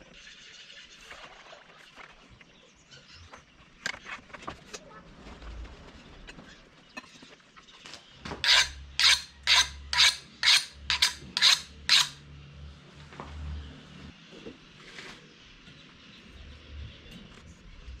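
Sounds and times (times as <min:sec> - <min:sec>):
rasping strokes on a knife: 0:08.4 - 0:12.2.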